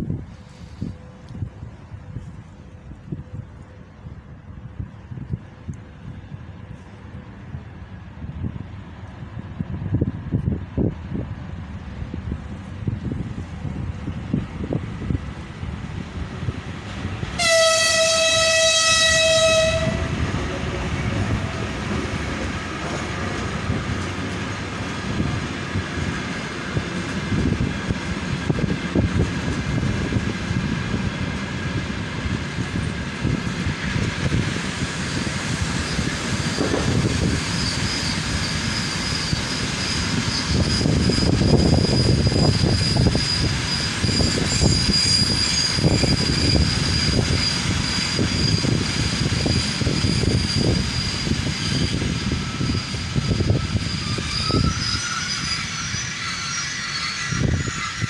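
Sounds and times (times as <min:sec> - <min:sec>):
locomotive horn blast: 0:17.4 - 0:20.3
train wheels clacking over rails: 0:18.5 - 0:58.0
high steady brake squeal: 0:35.1 - 0:58.0.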